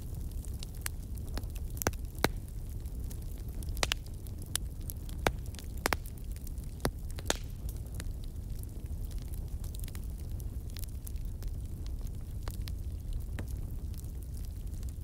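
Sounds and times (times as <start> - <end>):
wood fire crackling and popping: 0.0 - 15.0.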